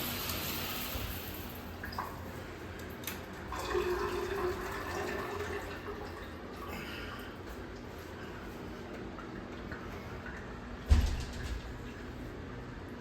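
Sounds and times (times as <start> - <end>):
shower water running: 0.0 - 12.2
water dripping: 0.2 - 6.3.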